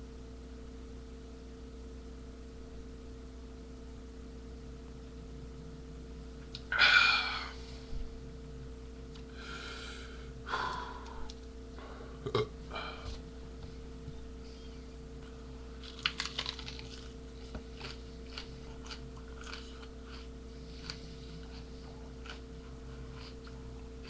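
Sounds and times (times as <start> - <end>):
man burping: 6.7 - 7.6, 12.2 - 13.1
quiet throat sounds: 9.4 - 13.2.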